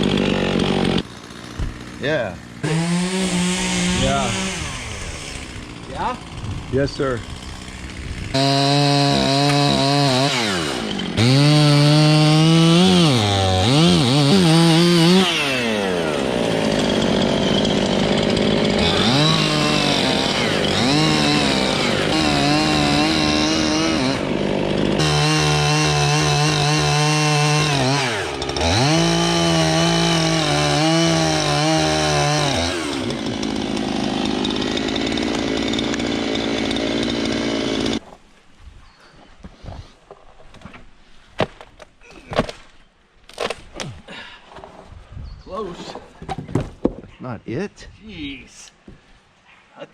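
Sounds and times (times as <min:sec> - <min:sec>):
chainsaw cutting wood: 0:00.0 - 0:38.0.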